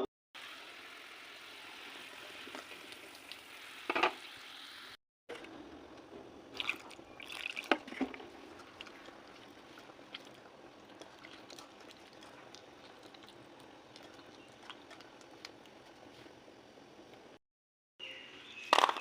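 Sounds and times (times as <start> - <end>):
food sizzling and crackling: 0.4 - 5.0, 6.5 - 16.5.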